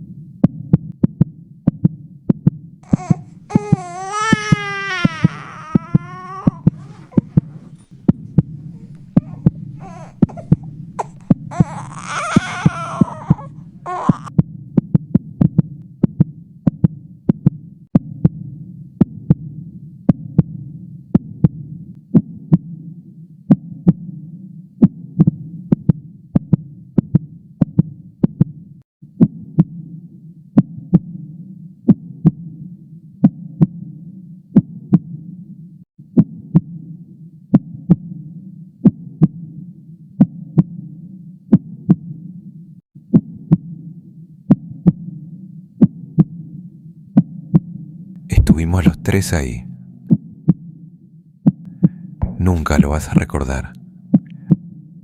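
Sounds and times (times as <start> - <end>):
heartbeat double beats: 0.3 - 22.7, 24.8 - 28.6, 45.8 - 46.4, 51.5 - 53.4
baby crying: 2.8 - 8.0, 8.6 - 14.3
low steady hum: 2.8 - 15.3, 51.7 - 54.5.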